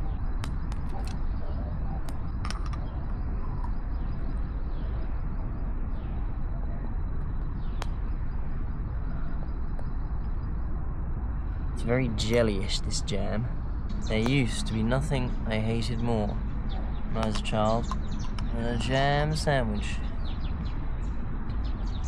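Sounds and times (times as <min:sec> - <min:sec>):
distant city traffic rumble: 0:00.0 - 0:22.0
small sharp clicks and taps: 0:17.2 - 0:18.5.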